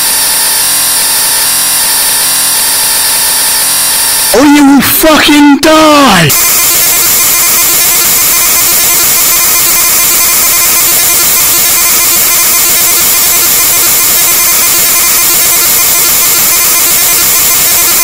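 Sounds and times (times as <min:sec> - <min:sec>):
distorted buzzing electronic music: 0:04.0 - 0:18.0.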